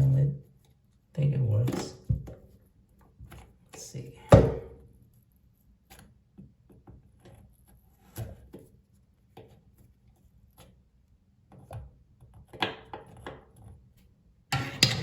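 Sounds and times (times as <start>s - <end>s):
tools and faucet parts clicking: 14.6s - 15.0s.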